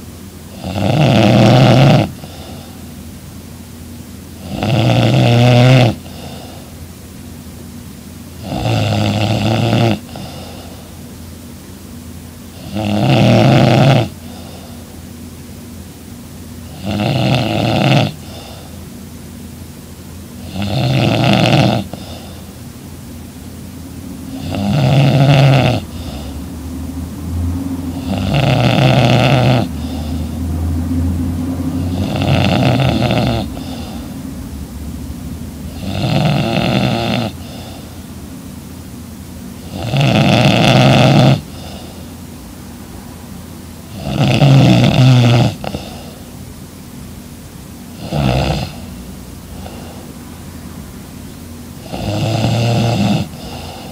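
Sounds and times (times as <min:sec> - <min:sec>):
woman snoring: 0:00.5 - 0:02.8, 0:04.4 - 0:06.7, 0:08.4 - 0:11.0, 0:12.6 - 0:14.8, 0:16.7 - 0:18.8, 0:20.4 - 0:22.6, 0:24.2 - 0:26.5, 0:27.9 - 0:30.6, 0:31.7 - 0:34.3, 0:35.7 - 0:38.1, 0:39.6 - 0:42.2, 0:43.9 - 0:46.3, 0:48.0 - 0:50.2, 0:51.8 - 0:53.9
quiet breathing: 0:02.1 - 0:03.1, 0:06.0 - 0:06.9, 0:10.0 - 0:11.1, 0:14.1 - 0:15.1, 0:18.1 - 0:19.0, 0:21.8 - 0:22.7, 0:23.8 - 0:26.9, 0:29.2 - 0:34.7, 0:37.3 - 0:38.5, 0:41.2 - 0:42.9, 0:45.5 - 0:46.4, 0:48.7 - 0:51.2, 0:53.2 - 0:53.9.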